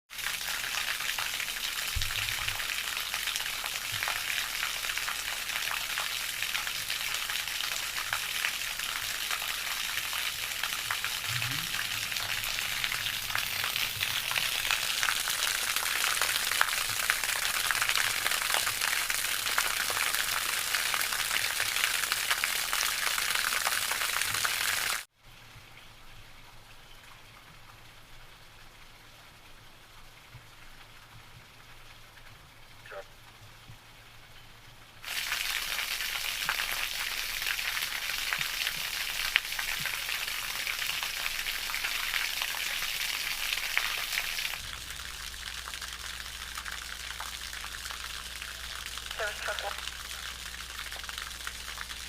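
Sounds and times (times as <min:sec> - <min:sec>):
crackling hiss of water: 0:00.1 - 0:52.0.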